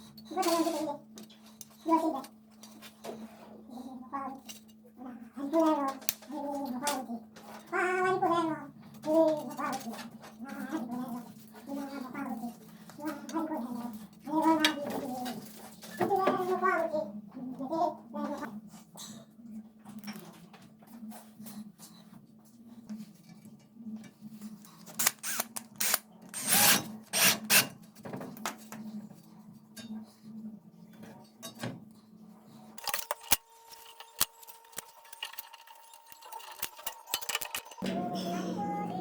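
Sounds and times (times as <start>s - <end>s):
low machine hum: 37.8s - 39.0s.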